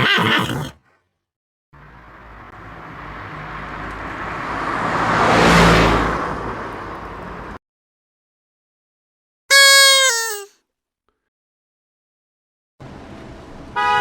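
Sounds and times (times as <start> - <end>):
car passing by: 1.8 - 7.6.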